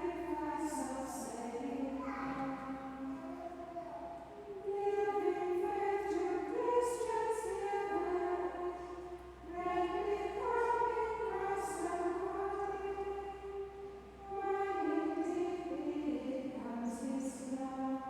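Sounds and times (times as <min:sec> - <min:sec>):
choir of nuns singing: 0:00.0 - 0:03.1, 0:04.4 - 0:18.0.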